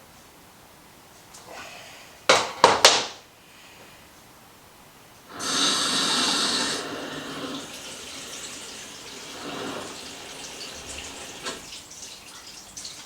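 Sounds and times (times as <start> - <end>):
tap water running into basin: 5.3 - 13.0.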